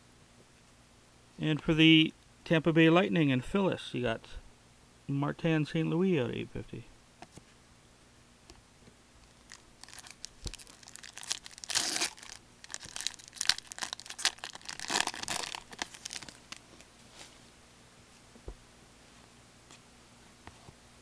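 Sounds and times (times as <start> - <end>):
foil wrapper crinkling and tearing: 9.2 - 16.9.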